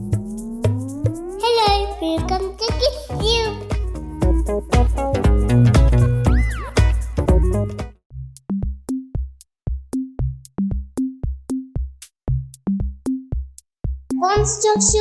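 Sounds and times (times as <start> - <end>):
electronic music: 0.0 - 8.0
drum-machine beat: 0.0 - 15.0.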